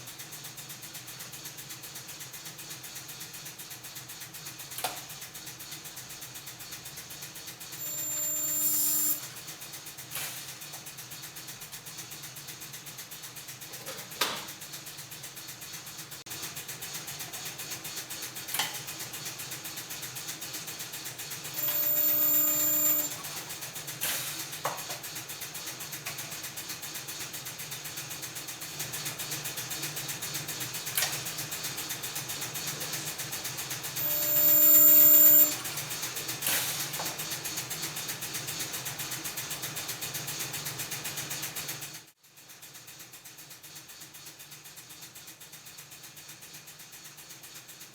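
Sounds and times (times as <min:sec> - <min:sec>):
spot welder buzzing with whine: 0:07.8 - 0:09.4, 0:21.4 - 0:23.5, 0:34.0 - 0:35.8
steady background hum: 0:20.2 - 0:26.8, 0:29.9 - 0:37.1.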